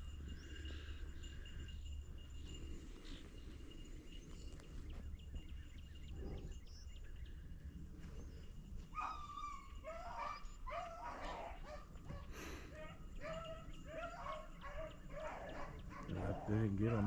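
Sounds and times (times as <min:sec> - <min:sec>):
dogs baying: 0:08.9 - 0:17.0.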